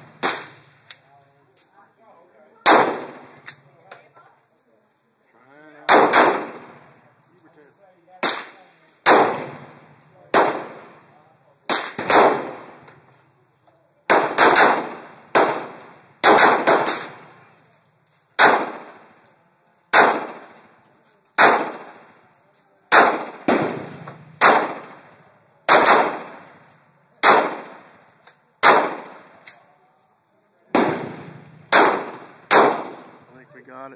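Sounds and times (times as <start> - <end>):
pistol shots with echo: 0.0 - 0.8, 2.6 - 3.7, 5.8 - 6.9, 8.2 - 13.0, 14.1 - 17.4, 18.4 - 19.2, 19.9 - 20.7, 21.4 - 22.1, 22.9 - 28.0, 28.6 - 29.6, 30.7 - 33.3.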